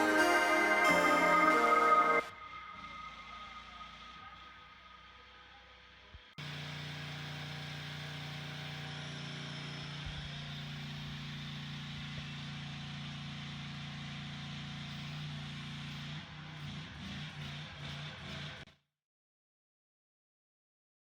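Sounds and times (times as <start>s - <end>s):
engine humming steadily: 2.4s - 18.7s.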